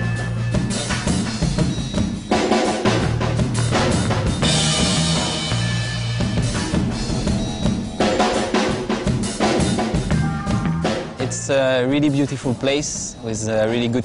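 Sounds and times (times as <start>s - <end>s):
drum-kit beat: 0.0s - 13.5s
sustained bass line: 2.8s - 12.6s.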